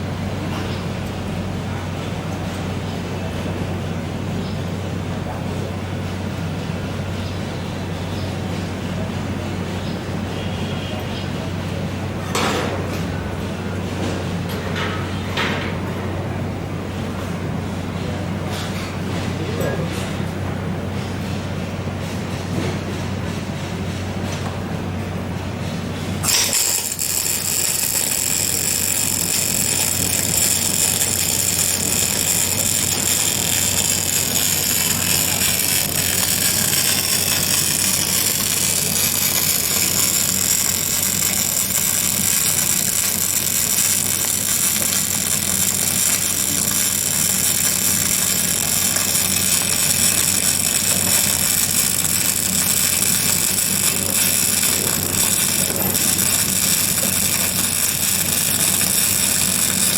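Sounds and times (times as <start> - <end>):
welding machine hum: 25.1 - 59.9
welding arc hissing: 26.2 - 59.9.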